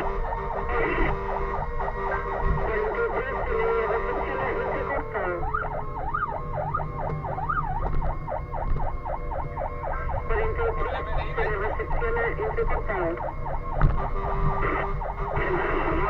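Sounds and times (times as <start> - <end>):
fire engine siren yelping: 0.0 - 16.0
truck engine rumbling: 0.0 - 16.0.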